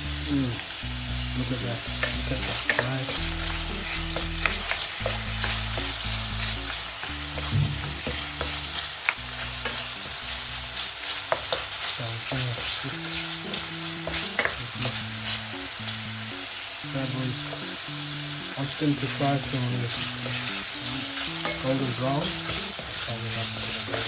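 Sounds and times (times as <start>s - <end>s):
chicken sizzling in hot oil: 0.0s - 24.0s
oil popping and crackling: 2.0s - 15.8s.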